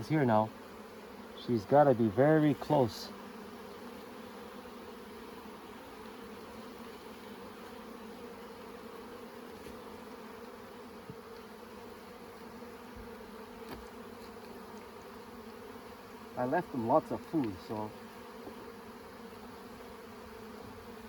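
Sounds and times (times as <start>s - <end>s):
bees buzzing: 0.0s - 21.0s.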